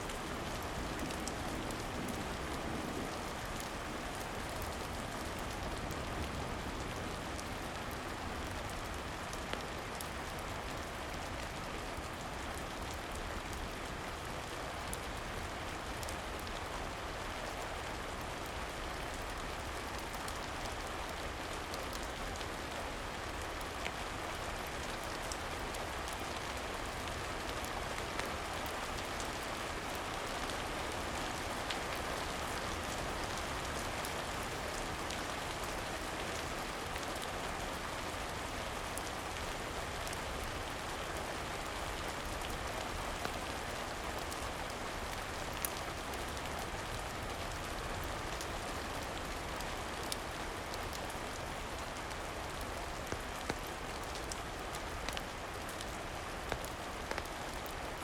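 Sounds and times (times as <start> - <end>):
gentle rain: 0.0 - 58.0
wood fire crackling: 55.1 - 57.8.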